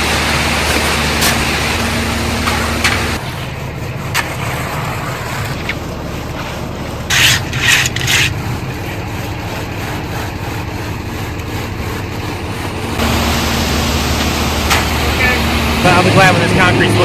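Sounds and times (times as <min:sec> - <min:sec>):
tool scraping wet concrete: 0:00.0 - 0:13.0
diesel truck engine running: 0:00.0 - 0:17.0.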